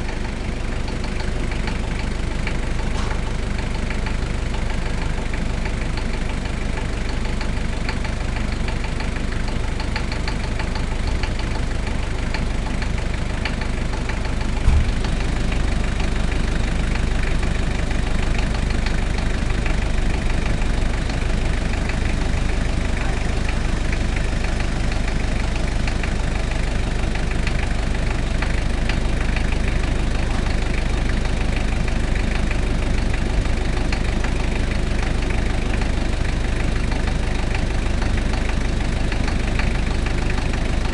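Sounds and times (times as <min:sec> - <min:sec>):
diesel engine idling: 0:00.0 - 0:40.9
short thump: 0:02.9 - 0:03.3, 0:14.6 - 0:15.2.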